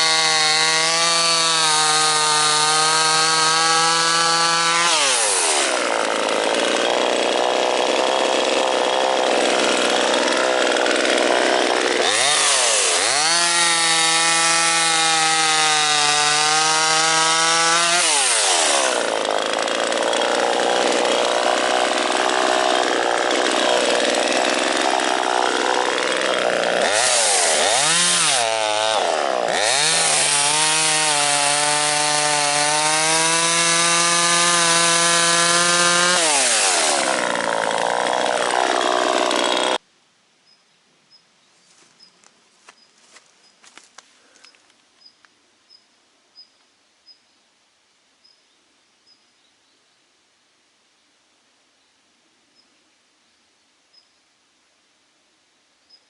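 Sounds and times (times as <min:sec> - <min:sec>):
chainsaw chain cutting wood: 0:00.0 - 0:39.8
chainsaw engine revving: 0:00.0 - 0:39.8.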